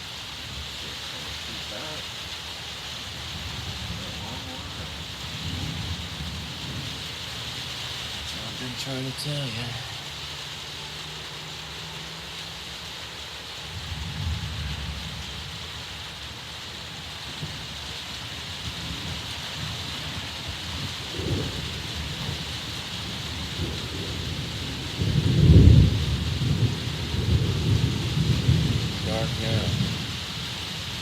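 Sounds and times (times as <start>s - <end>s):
heavy rain: 0.0s - 31.0s
rolling thunder: 3.1s - 7.5s, 13.7s - 15.8s, 16.8s - 30.8s.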